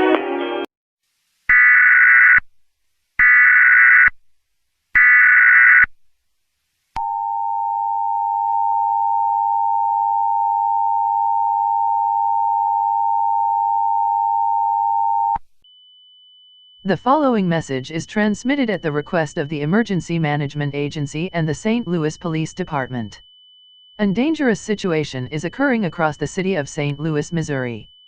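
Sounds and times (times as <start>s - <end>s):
warbling data bursts: 24.0s - 27.9s.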